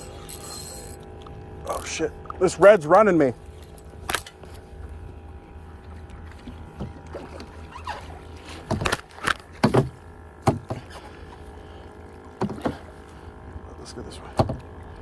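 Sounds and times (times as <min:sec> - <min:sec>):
knocks on kayak hull: 0:09.6 - 0:10.9, 0:12.4 - 0:12.8, 0:14.4 - 0:14.6.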